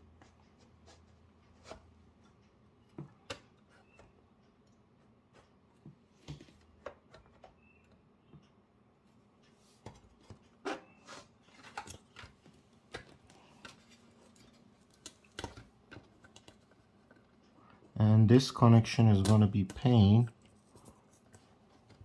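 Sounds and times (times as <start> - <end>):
hands clicking and tapping parts: 11.4 - 17.9, 18.8 - 22.0.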